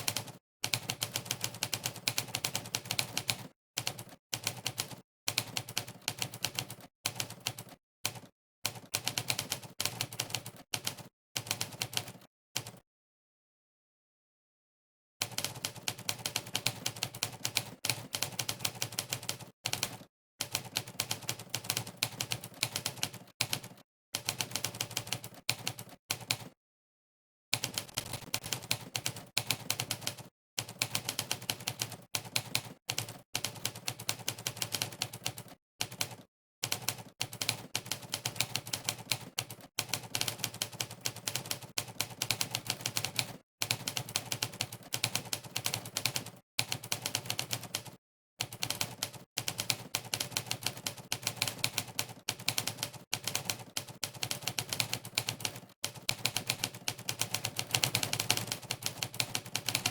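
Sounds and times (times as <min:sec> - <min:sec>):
typewriter keystroke sound effect: 0:27.6 - 0:35.0, 0:35.8 - 0:59.9.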